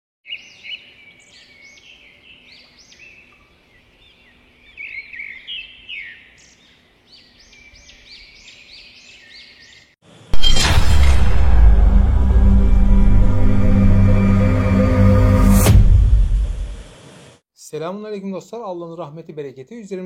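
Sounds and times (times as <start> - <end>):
birds chirping: 0.2 - 10.0
loud hit: 10.3 - 17.0
dramatic music: 10.4 - 17.0.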